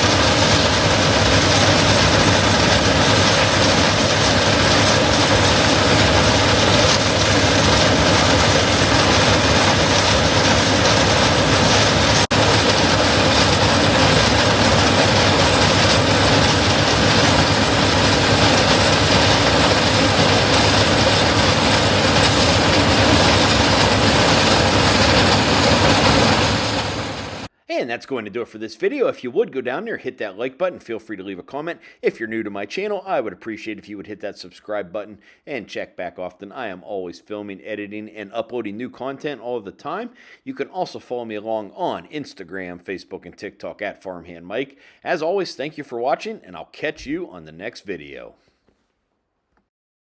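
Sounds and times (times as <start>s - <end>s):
diesel farm machinery running: 0.0s - 27.5s.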